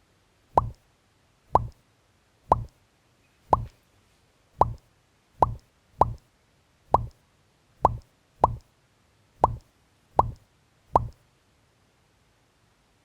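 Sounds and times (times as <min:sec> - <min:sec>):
rising bloop plop: 0:00.6 - 0:00.8, 0:01.6 - 0:01.8, 0:02.5 - 0:02.7, 0:05.4 - 0:06.2, 0:07.9 - 0:08.6, 0:09.4 - 0:09.6, 0:10.2 - 0:10.4, 0:11.0 - 0:11.2.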